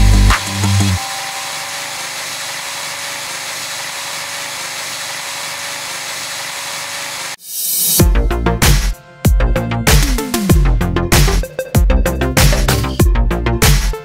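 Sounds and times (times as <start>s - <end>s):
music with a beat: 0.0s - 1.0s, 8.0s - 14.0s
drill-powered grinder grinding: 0.0s - 7.4s.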